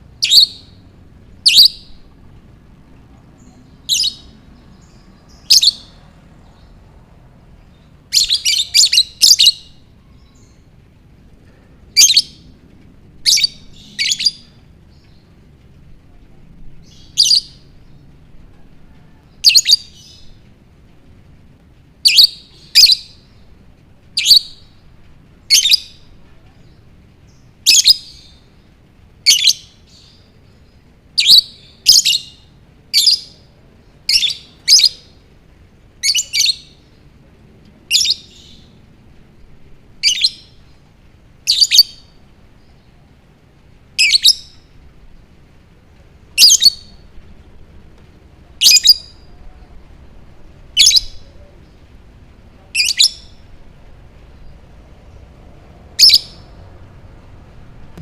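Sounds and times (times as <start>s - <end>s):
lovebird chirping: 0.1s - 2.2s, 3.1s - 6.9s, 7.6s - 10.7s, 11.9s - 12.5s, 13.2s - 15.3s, 16.8s - 18.2s, 19.1s - 20.4s, 22.0s - 23.4s, 24.2s - 24.8s, 25.4s - 28.5s, 29.3s - 35.2s, 36.0s - 36.9s, 37.9s - 38.8s, 40.0s - 40.8s, 41.4s - 43.1s, 44.0s - 44.8s, 46.3s - 47.1s, 48.6s - 49.9s, 50.7s - 51.9s, 52.6s - 53.6s, 55.9s - 56.6s.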